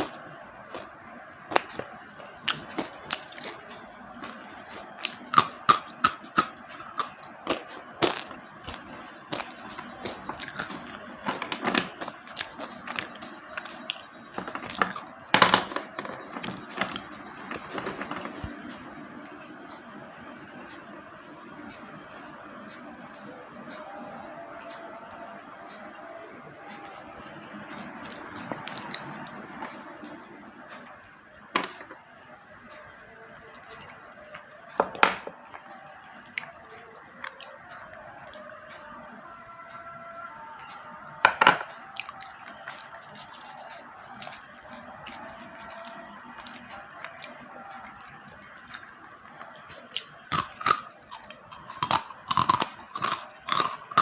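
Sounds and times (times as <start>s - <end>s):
crunching and snapping while chewing: 0.0s - 19.4s, 28.0s - 31.9s, 35.5s - 38.8s, 41.6s - 54.0s
slate pencil crunching when bitten: 50.3s - 54.0s.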